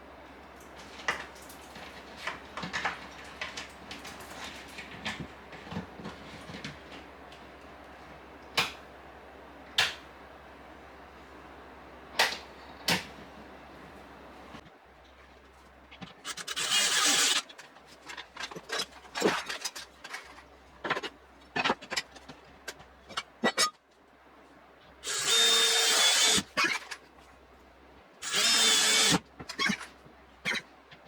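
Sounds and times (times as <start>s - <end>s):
power drill running: 16.3s - 17.4s, 25.0s - 26.8s, 28.2s - 29.8s.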